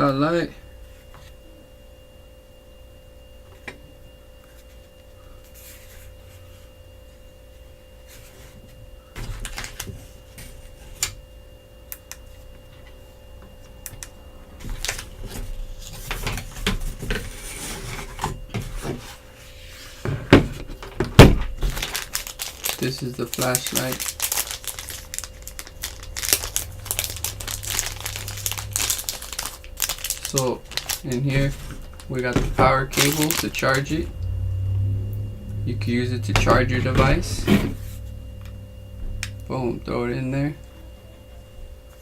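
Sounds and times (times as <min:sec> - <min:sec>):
clicks and rustling of packaging: 0:09.2 - 0:10.0, 0:20.4 - 0:34.0
faint steady high tone: 0:24.8 - 0:41.8.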